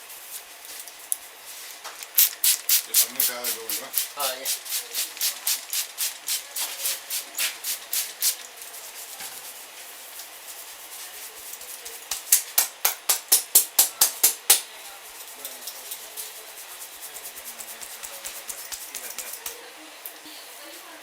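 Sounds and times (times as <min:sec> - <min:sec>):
fingers rubbing scalp through hair: 0:02.9 - 0:13.4, 0:14.0 - 0:19.6.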